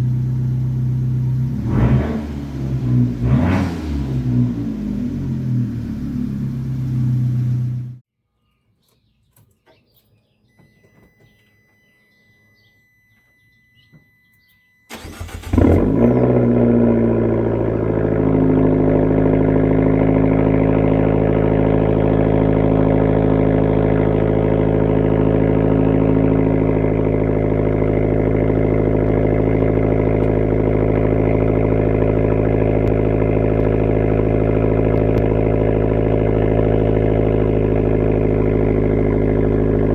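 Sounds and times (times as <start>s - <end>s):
car engine running and idling: 0.0s - 8.0s, 10.5s - 39.9s.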